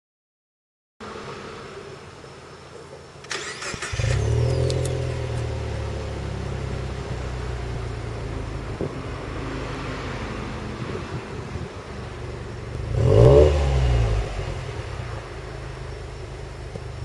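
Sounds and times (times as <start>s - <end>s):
car engine idling: 1.0s - 17.0s
engine starter cranking: 3.2s - 5.2s.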